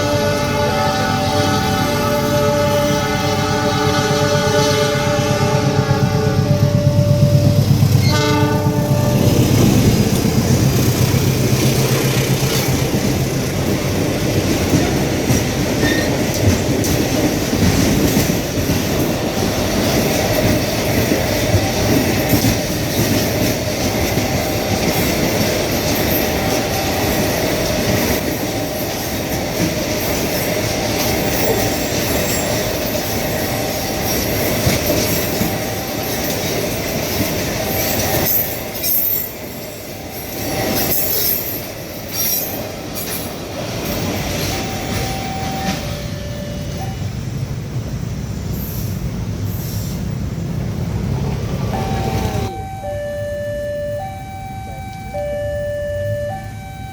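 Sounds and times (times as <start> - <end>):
train horn: 0.0 - 9.8, 44.6 - 47.1
train wheels on rails: 0.0 - 56.9
wheel squeals: 14.6 - 17.0, 30.0 - 47.2.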